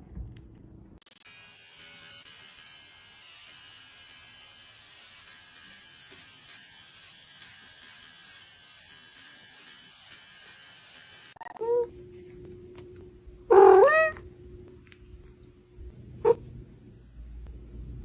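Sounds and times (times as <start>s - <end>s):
small electric motor hissing hum: 1.0s - 11.4s
cat meow: 13.5s - 14.2s.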